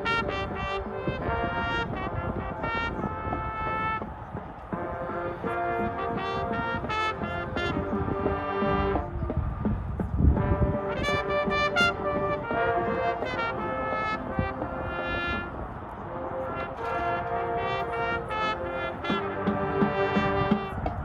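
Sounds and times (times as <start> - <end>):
marching band playing: 0.0 - 21.0.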